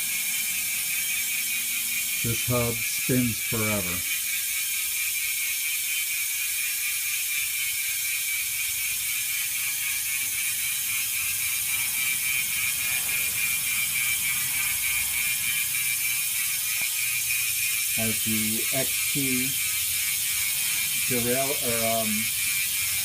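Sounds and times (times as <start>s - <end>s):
bicycle freehub buzzing: 0.0s - 23.0s.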